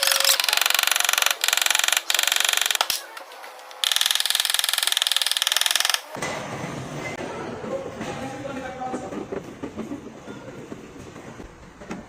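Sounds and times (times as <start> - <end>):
mechanical tool clicking buzz: 0.0 - 3.0, 3.7 - 6.2.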